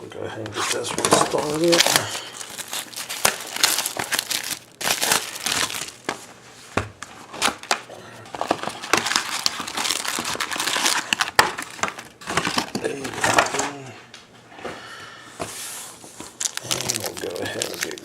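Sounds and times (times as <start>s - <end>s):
plastic wrapping crinkling and tearing: 0.6s - 6.2s, 7.0s - 13.8s, 16.2s - 18.0s.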